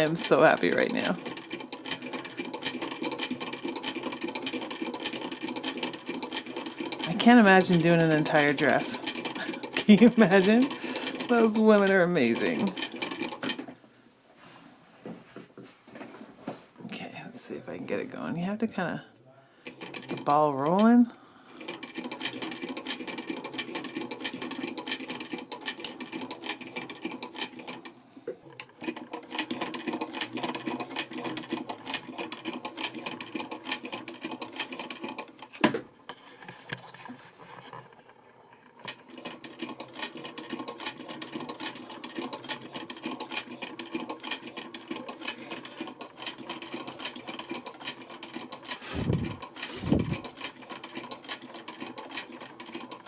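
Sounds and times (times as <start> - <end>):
sewing machine clattering: 0.0 - 13.8, 19.6 - 36.1, 37.5 - 53.0.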